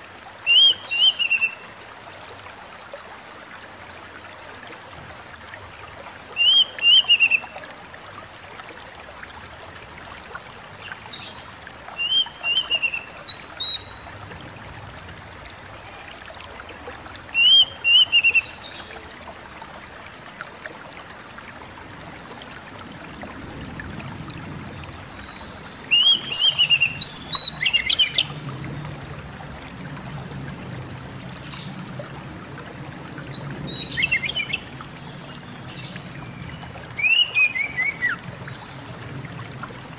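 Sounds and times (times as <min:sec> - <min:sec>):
bird singing whistled notes: 0:00.5 - 0:01.6, 0:06.4 - 0:07.4, 0:17.4 - 0:18.5, 0:25.9 - 0:28.3, 0:37.0 - 0:38.2.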